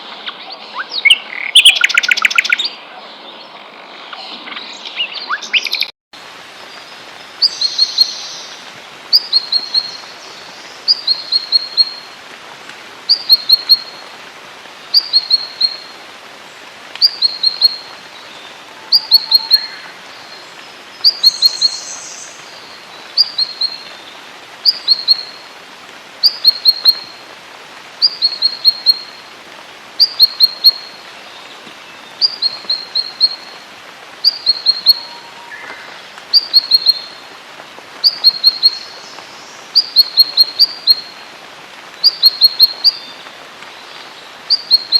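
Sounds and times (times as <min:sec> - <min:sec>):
higher bird call: 0:00.0 - 0:05.9, 0:17.0 - 0:20.4, 0:32.2 - 0:33.6, 0:34.2 - 0:37.2, 0:38.0 - 0:41.2
songbird chirping phrase: 0:00.0 - 0:05.9, 0:06.8 - 0:12.2, 0:13.1 - 0:14.1, 0:15.0 - 0:16.0, 0:17.0 - 0:25.5, 0:26.2 - 0:27.2, 0:28.0 - 0:29.2, 0:30.0 - 0:33.6, 0:34.2 - 0:37.2, 0:38.0 - 0:41.2, 0:42.0 - 0:44.9
faint hiss: 0:00.0 - 0:44.9.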